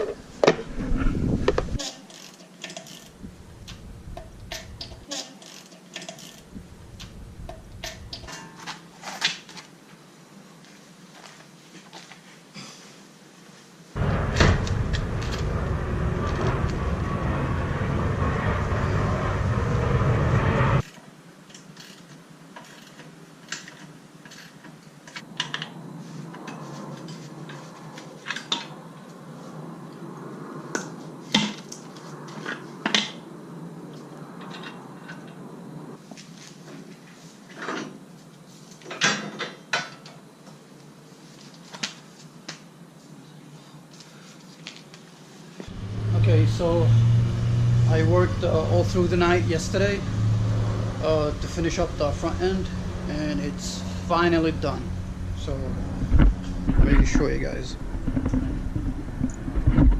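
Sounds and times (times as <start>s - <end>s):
loud deep steady sound: 14.0s - 20.8s, 45.7s - 59.8s.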